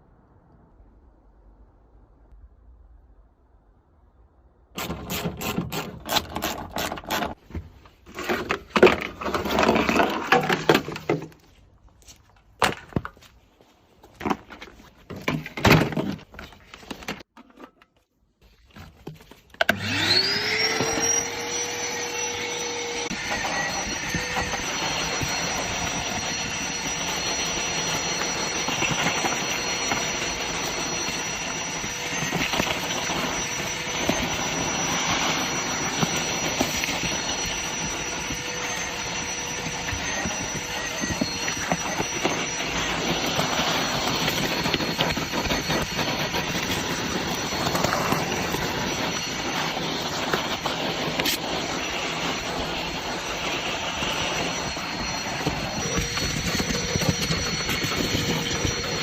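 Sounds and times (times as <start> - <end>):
electric motor whining: 19.7 - 59.0.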